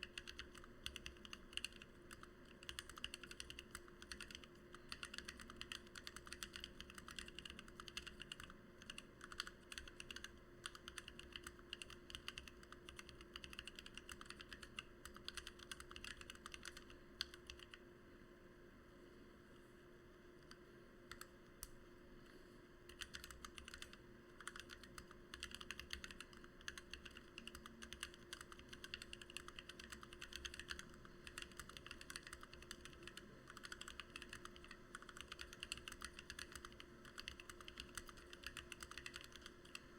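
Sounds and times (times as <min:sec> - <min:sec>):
keyboard keystroke clacks: 0:22.9 - 0:39.8.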